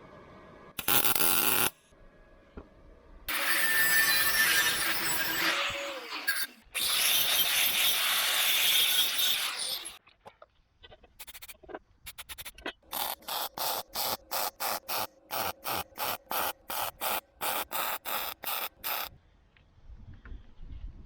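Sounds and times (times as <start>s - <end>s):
hand tool stroking sheet steel: 3.3s - 10.0s, 11.2s - 19.1s.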